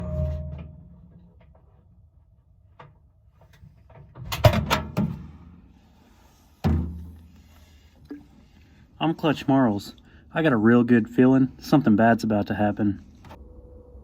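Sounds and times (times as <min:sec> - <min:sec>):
sharp knocks and bangs: 0:00.0 - 0:01.3.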